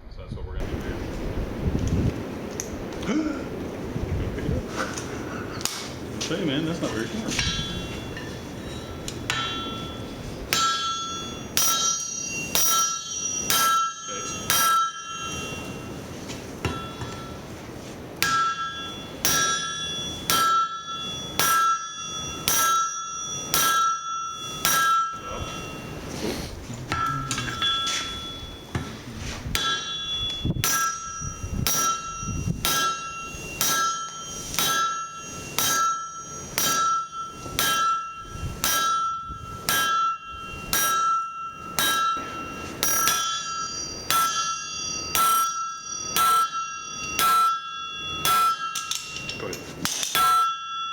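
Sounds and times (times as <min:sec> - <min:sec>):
hammer blows on anvil: 0:05.6 - 0:17.6, 0:18.2 - 0:50.9.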